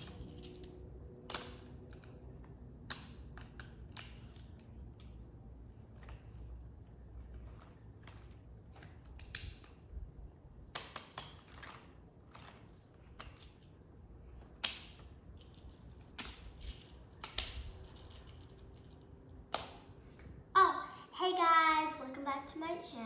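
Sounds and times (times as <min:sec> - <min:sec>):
plastic magnetic tiles clicking: 0:10.7 - 0:11.5, 0:16.1 - 0:18.4.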